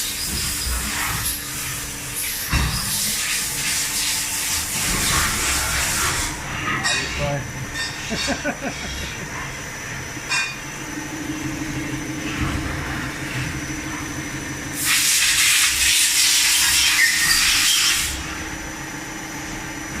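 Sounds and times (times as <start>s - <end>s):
lathe spindle humming: 7.2s - 14.9s
loud hiss: 14.8s - 18.2s.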